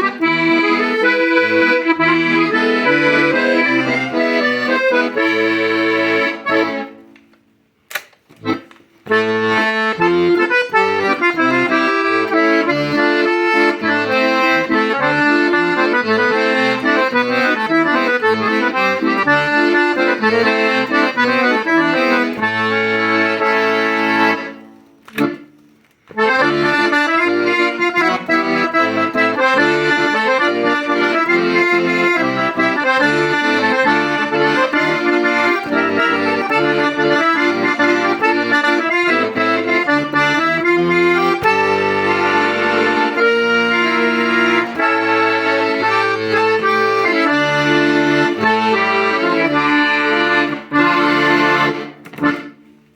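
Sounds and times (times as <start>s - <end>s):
piano accordion playing melody: 0.0s - 7.3s, 7.9s - 52.9s
single click: 7.1s - 8.2s.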